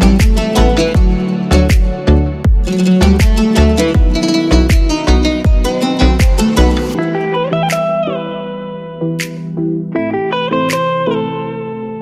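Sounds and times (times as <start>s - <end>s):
latin music with drum beat: 0.0s - 7.0s
plucked instrument notes: 0.0s - 12.0s.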